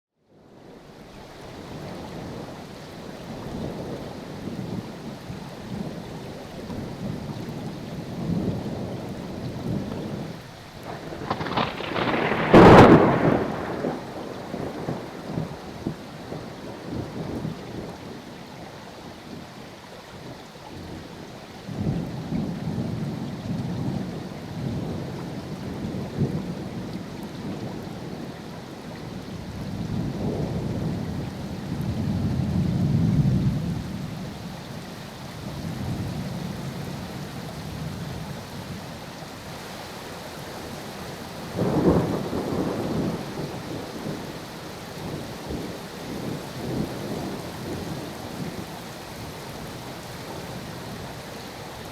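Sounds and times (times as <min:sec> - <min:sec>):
steady rain: 0:00.2 - 0:51.9
rolling thunder: 0:08.1 - 0:18.0, 0:29.4 - 0:34.8, 0:41.5 - 0:48.7
thunder clap: 0:10.8 - 0:15.4, 0:41.6 - 0:44.2.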